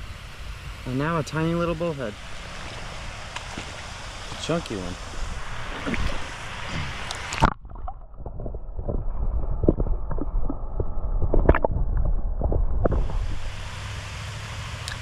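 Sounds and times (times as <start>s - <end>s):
flowing water rushing: 0.0s - 11.7s, 12.4s - 15.0s
underwater gurgling and sloshing: 0.0s - 14.2s
underwater knocks: 5.7s - 13.4s.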